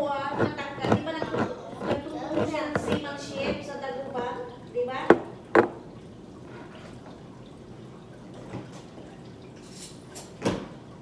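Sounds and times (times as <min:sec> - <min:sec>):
soft handling noise: 0:00.2 - 0:04.2, 0:05.1 - 0:07.0
kitchenware clinking: 0:00.3 - 0:04.2, 0:05.0 - 0:05.9.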